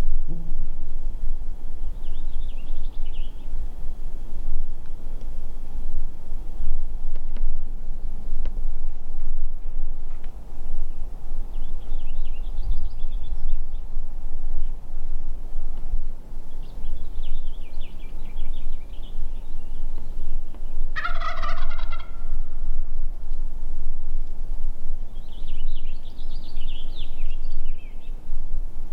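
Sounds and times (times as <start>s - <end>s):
steady low rumble: 0.0s - 28.9s
turkey gobbling: 20.9s - 22.4s.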